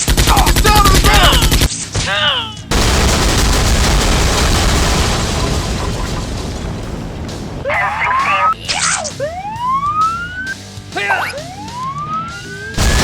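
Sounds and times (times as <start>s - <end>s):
loud blast: 2.7s - 7.8s, 12.8s - 13.0s.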